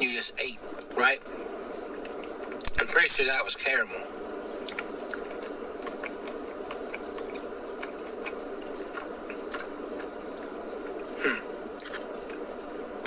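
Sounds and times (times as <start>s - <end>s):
background hiss and hum: 0.0s - 13.0s
person chewing ice cream: 1.8s - 2.8s, 4.1s - 13.0s.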